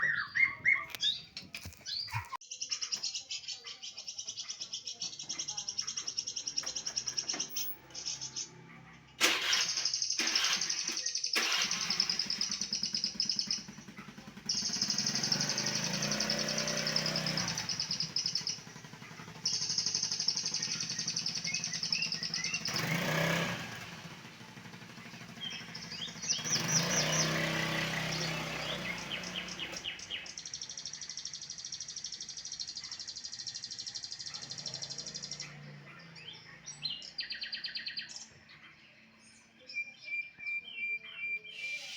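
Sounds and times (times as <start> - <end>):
bird singing fast high trills: 0.0 - 2.3, 9.4 - 38.2, 39.7 - 41.9
low engine hum: 11.6 - 30.7.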